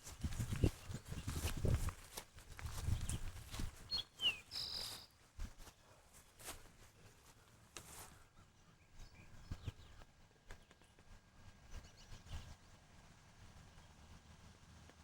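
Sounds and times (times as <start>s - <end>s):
bird chirping: 2.9s - 5.2s, 8.4s - 11.1s, 11.7s - 12.8s.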